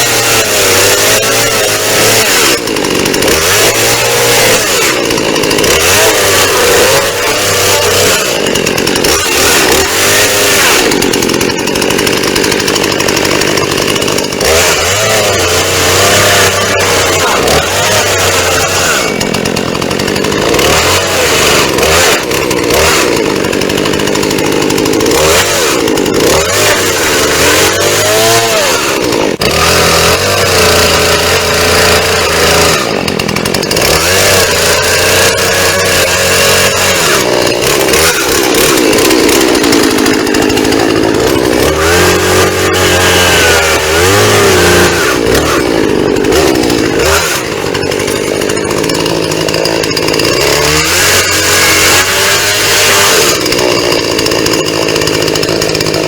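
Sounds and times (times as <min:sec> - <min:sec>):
chainsaw running: 0:00.0 - 0:56.0.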